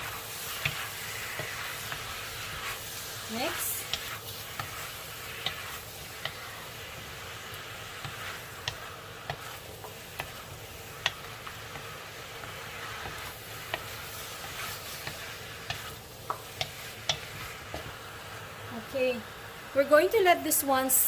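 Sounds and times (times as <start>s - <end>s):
chicken sizzling in hot oil: 0.0s - 21.0s
utensil clacking against pan: 0.4s - 2.7s, 3.5s - 18.0s.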